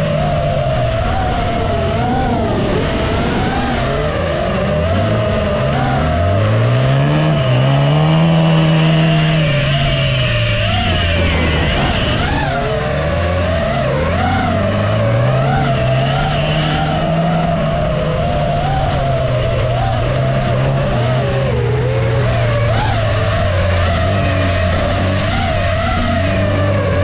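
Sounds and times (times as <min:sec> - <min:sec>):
high wavering whine: 0:00.0 - 0:27.0
race car engines running hard: 0:00.0 - 0:27.0.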